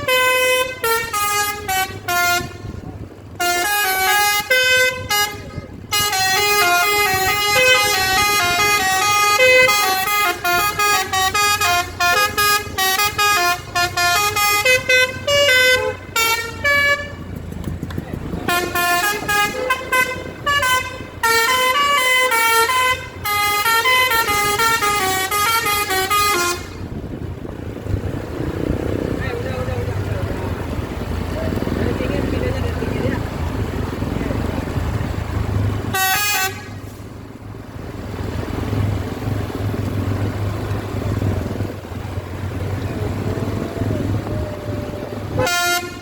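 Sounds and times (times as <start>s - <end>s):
musical bus air horn: 0.0s - 17.3s, 18.4s - 27.0s, 35.9s - 37.1s, 44.3s - 46.0s.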